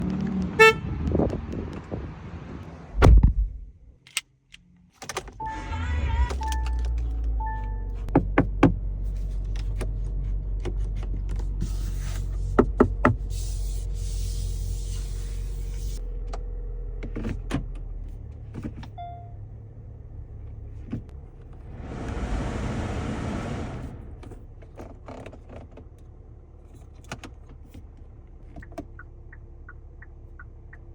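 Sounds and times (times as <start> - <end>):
car door thump: 3.0 - 3.5.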